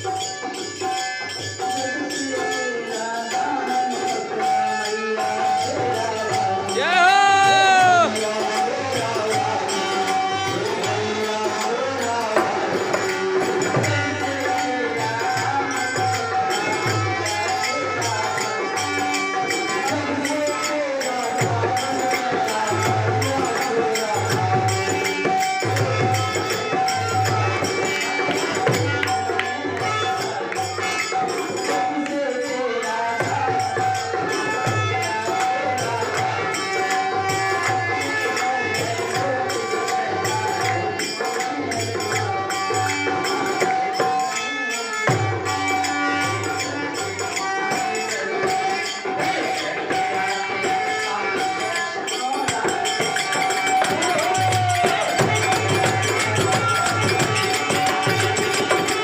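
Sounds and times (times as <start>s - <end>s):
jingling percussion: 0.0s - 59.0s
drum beating: 6.5s - 11.6s, 52.5s - 59.0s.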